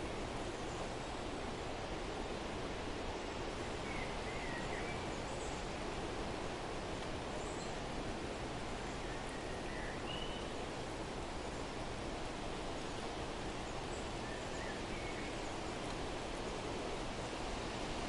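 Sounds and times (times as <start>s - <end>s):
steady outdoor noise: 0.0s - 18.0s
faint bird chirps: 8.8s - 10.6s.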